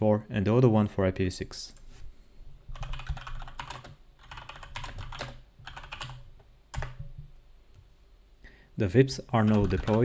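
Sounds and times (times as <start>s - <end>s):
typing on a keyboard: 2.8s - 7.2s, 9.5s - 10.0s.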